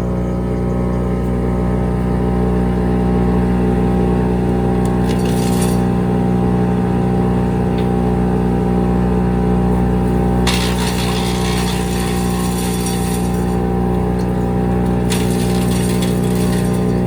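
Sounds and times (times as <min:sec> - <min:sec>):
wood chipper engine under load: 0:00.0 - 0:17.0
brush crackling in chipper: 0:04.4 - 0:06.4, 0:09.6 - 0:17.0.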